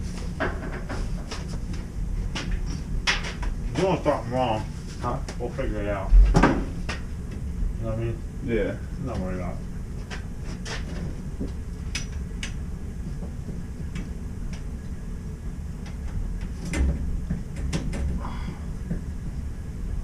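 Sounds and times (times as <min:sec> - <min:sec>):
low rumble: 0:05.6 - 0:10.4.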